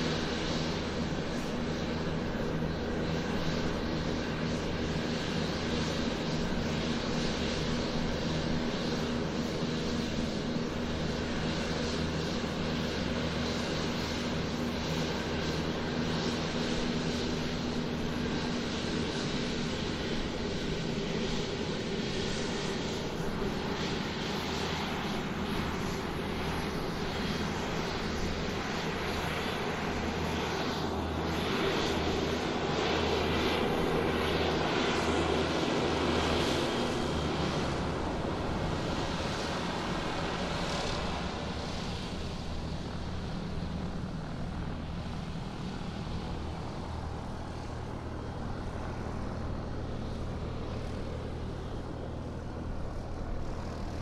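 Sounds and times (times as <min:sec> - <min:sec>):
airplane engines taxiing: 0:00.0 - 0:54.0.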